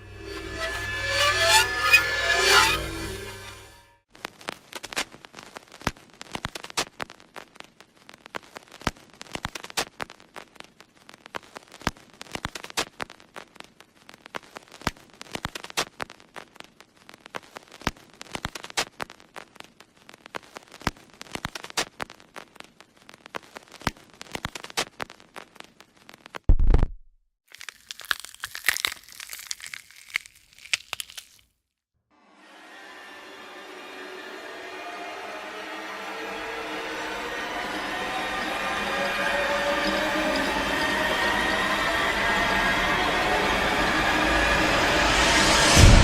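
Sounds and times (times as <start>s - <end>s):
dry crackling: 0.2s - 26.5s, 27.5s - 31.7s.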